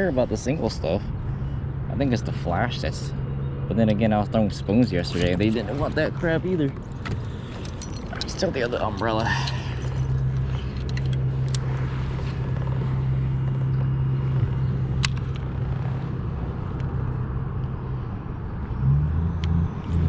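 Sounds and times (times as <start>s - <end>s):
low motor hum: 0.2s - 20.0s.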